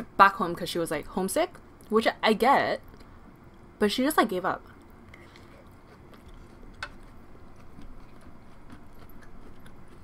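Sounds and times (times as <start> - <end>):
quiet chewing: 4.6 - 10.0.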